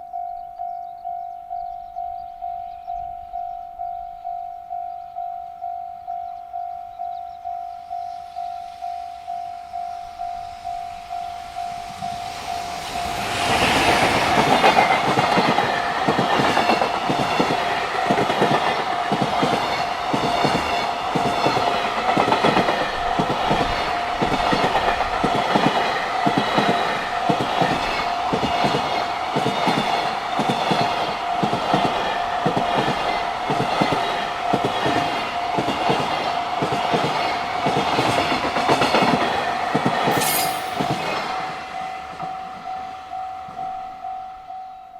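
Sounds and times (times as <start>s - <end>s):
level crossing warning bell: 0.0s - 23.0s, 40.1s - 44.9s.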